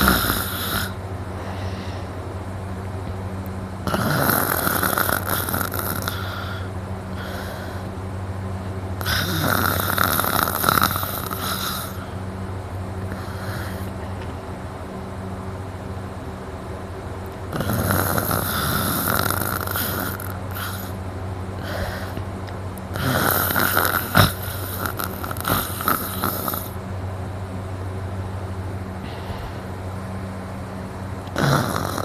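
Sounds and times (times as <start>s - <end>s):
man snoring: 0.0s - 2.1s, 3.8s - 7.9s, 9.0s - 12.2s, 13.1s - 14.0s, 17.5s - 21.0s, 21.6s - 22.2s, 22.9s - 26.8s, 31.3s - 32.0s
steady low hum: 0.0s - 32.0s.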